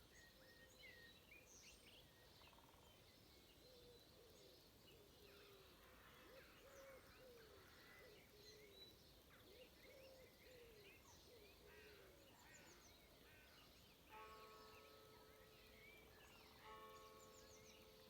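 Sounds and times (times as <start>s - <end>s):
church bell ringing: 14.1s - 15.8s, 16.6s - 18.0s.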